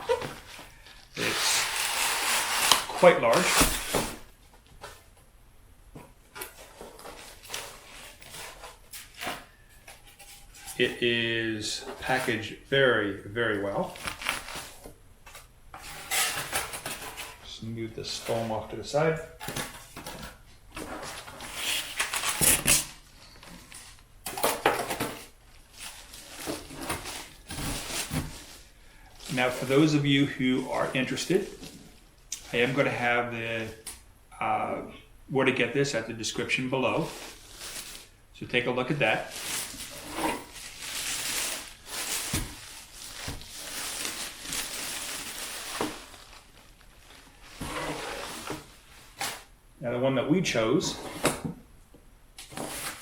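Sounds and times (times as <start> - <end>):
rustling of wrapping and foam: 0.0 - 5.2, 6.0 - 12.8, 13.5 - 33.8, 36.3 - 49.6, 52.4 - 53.0
foam and cardboard rubbing: 1.1 - 4.2.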